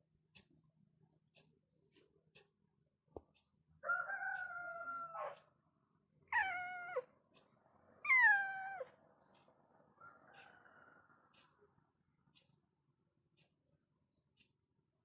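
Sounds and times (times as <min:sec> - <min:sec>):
cat meowing: 0:06.3 - 0:07.1, 0:08.1 - 0:08.9.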